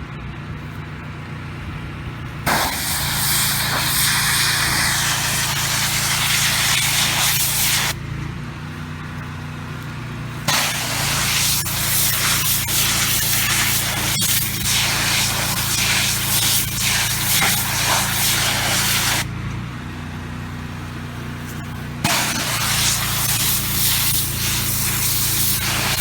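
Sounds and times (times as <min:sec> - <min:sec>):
pressure washer engine hum: 0:00.2 - 0:26.0
pressure washer spraying water: 0:02.5 - 0:08.0, 0:10.5 - 0:19.3, 0:22.0 - 0:26.0.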